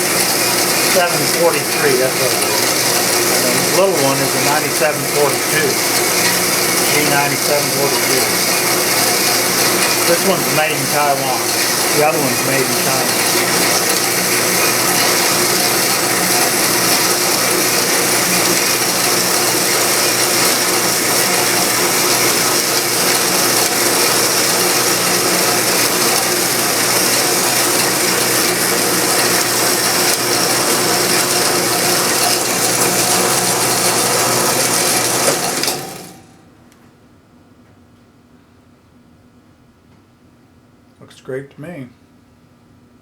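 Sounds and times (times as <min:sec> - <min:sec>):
saw cutting aluminium: 0:00.0 - 0:36.3.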